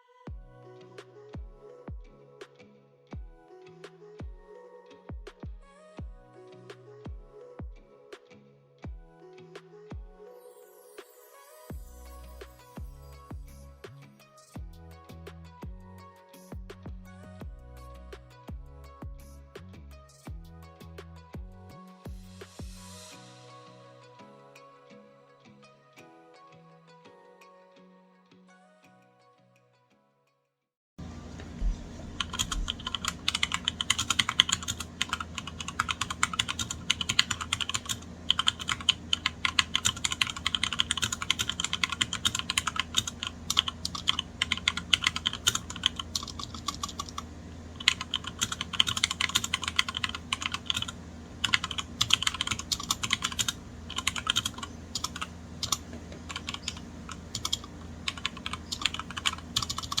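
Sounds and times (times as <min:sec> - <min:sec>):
fast typing on mechanical keyboard: 0:32.0 - 1:00.0.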